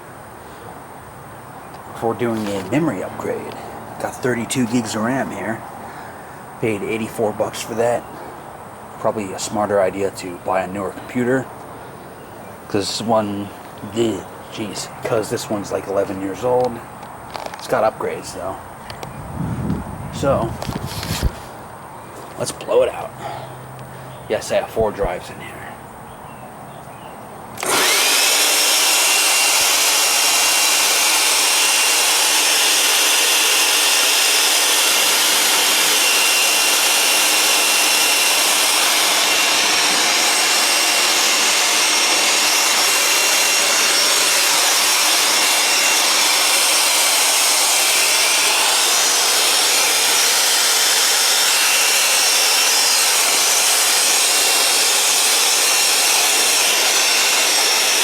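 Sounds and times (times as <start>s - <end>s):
air blower rushing: 2.0s - 6.0s, 19.3s - 21.6s, 27.6s - 58.0s.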